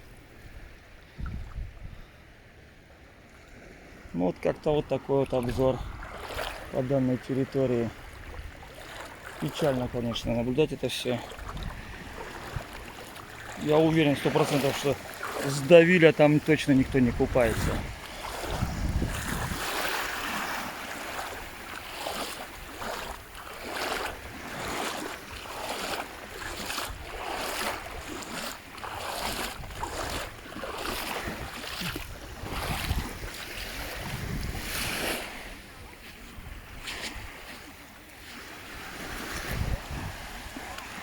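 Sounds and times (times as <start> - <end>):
wind buffeting microphone: 1.1 - 2.1, 5.4 - 6.8, 9.7 - 15.2, 16.5 - 20.3, 28.8 - 35.5, 39.0 - 41.0
sea waves washing on shore: 3.0 - 41.0.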